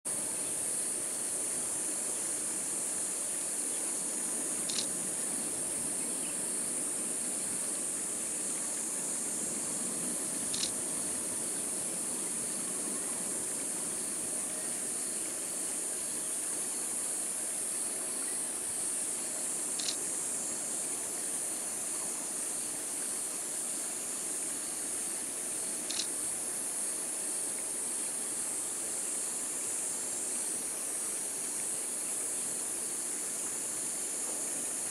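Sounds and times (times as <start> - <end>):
insects shrilling: 4.5 - 5.0, 10.4 - 11.6, 19.5 - 20.5, 25.6 - 26.2.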